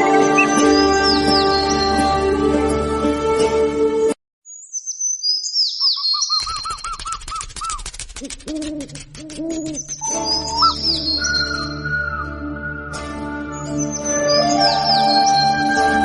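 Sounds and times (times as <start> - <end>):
music: 0.0 - 4.2, 10.0 - 16.0
repeated bird chirps: 0.2 - 1.2, 4.4 - 7.8, 9.6 - 12.5
high falling bird whistles: 4.5 - 7.8, 9.8 - 12.9.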